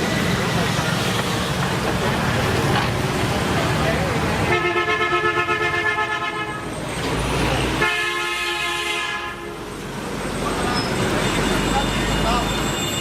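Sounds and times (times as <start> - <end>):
horn-like steady tone: 7.8 - 9.6.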